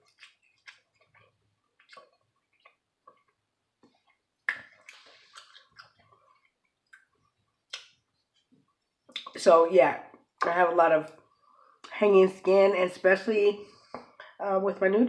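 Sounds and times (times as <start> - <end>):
wet mouth chewing clicks and smacks: 0.0 - 9.4.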